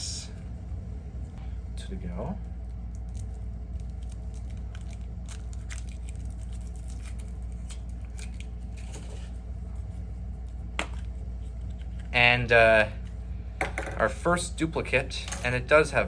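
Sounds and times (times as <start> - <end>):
steady low hum: 0.0 - 16.0
foil crinkling: 3.0 - 9.4.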